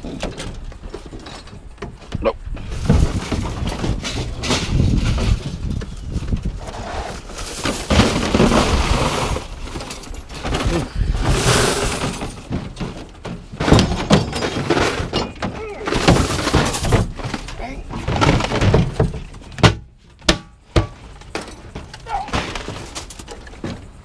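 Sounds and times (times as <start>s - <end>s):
scrap metal clanging and crashing: 0.0s - 24.0s.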